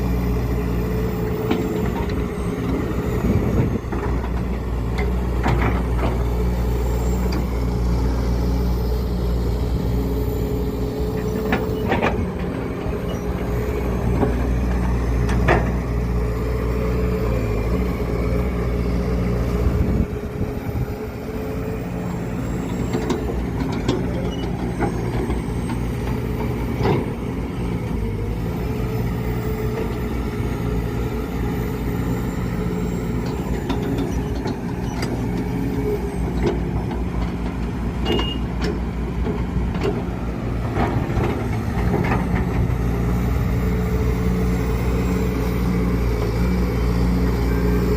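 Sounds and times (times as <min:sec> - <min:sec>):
excavator diesel engine: 0:00.0 - 0:47.9.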